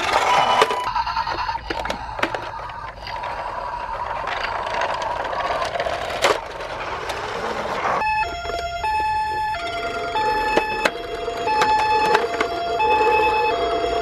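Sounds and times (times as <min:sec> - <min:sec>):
toy ambulance rattling whir: 0:00.0 - 0:14.0.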